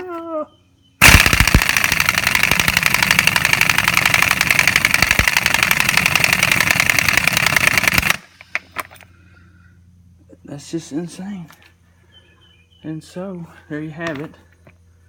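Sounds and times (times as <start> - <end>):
air impact wrench hammering: 1.0 - 8.3.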